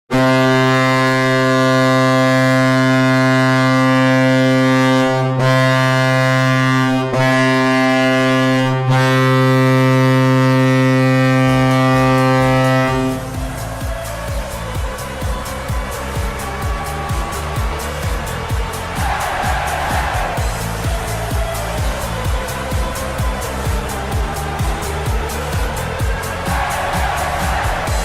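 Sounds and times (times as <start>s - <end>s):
hockey goal horn blowing: 0.1s - 28.0s
music with a beat: 11.0s - 28.0s.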